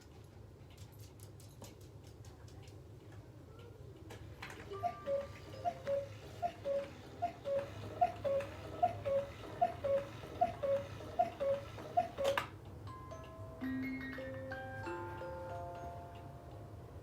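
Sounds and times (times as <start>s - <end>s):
cuckoo clock call: 4.5s - 12.5s.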